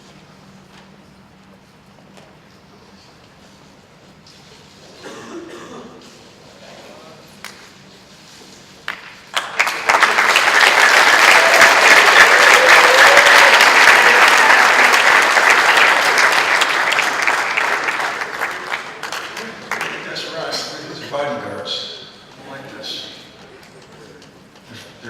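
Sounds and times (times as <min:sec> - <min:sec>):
audience applauding: 0:08.9 - 0:20.8.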